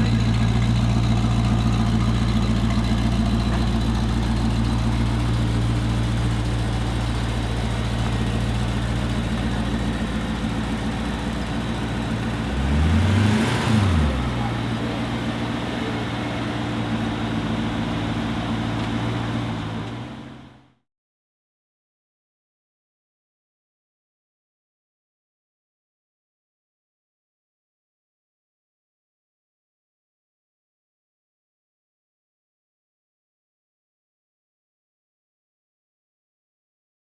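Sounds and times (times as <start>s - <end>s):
car engine idling: 0.0s - 20.6s.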